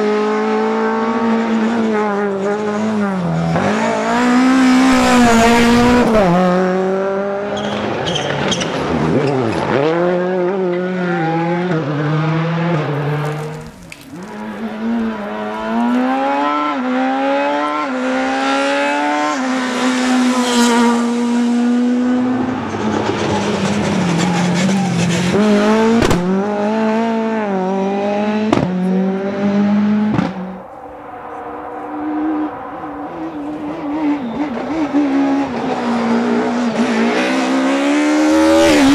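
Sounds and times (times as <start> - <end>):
rally car engines revving: 0.0 - 38.9.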